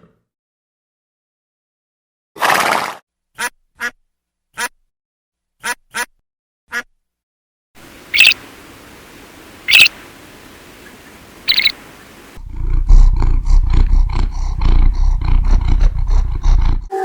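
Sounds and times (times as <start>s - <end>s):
duck quacks: 8.1s - 8.4s, 9.7s - 9.9s, 11.5s - 11.7s
deep animal growl: 12.4s - 16.9s.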